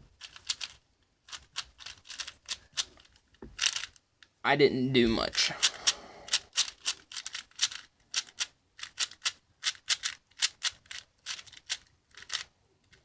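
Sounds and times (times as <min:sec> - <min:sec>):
puzzle cube layers clacking: 0:00.0 - 0:04.0, 0:05.1 - 0:13.0.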